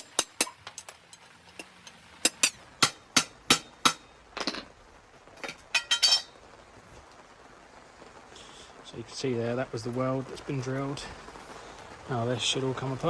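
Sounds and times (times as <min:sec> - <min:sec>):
hammer striking metal rod: 0:00.0 - 0:00.9, 0:01.6 - 0:04.6
ringing metal clinks: 0:05.8 - 0:06.3.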